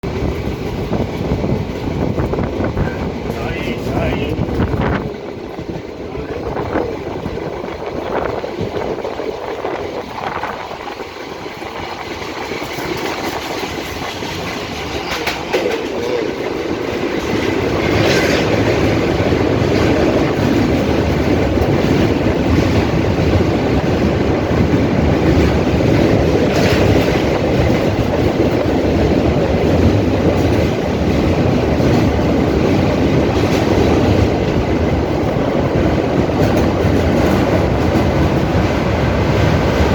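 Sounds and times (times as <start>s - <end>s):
train rumbling on rails: 0.0s - 39.9s
train wheel clacks: 0.0s - 39.9s.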